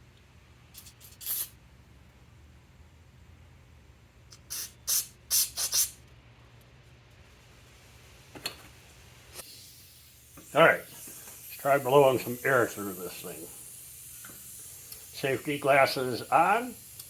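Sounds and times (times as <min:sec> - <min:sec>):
aerosol can spraying: 0:00.8 - 0:01.6, 0:04.3 - 0:06.0, 0:09.3 - 0:17.0.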